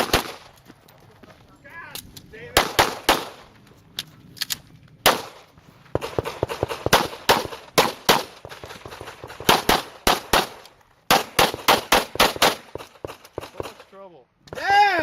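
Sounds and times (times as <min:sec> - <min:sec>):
pistol gunshots: 0:00.0 - 0:00.5, 0:02.5 - 0:03.5, 0:05.0 - 0:05.4, 0:06.0 - 0:13.8.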